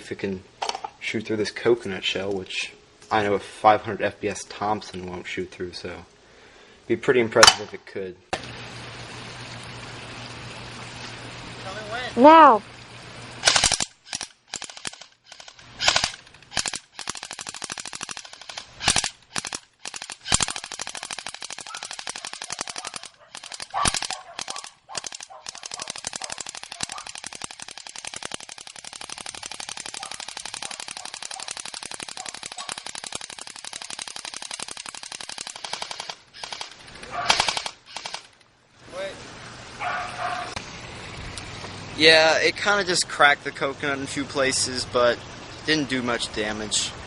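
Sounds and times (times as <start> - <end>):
airsoft machine gun bursts: 13.4 - 38.4.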